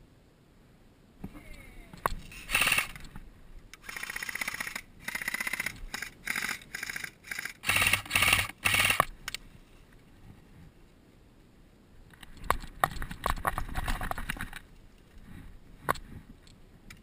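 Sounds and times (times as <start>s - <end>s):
airsoft guns firing bursts: 2.5s - 3.0s, 3.8s - 9.1s.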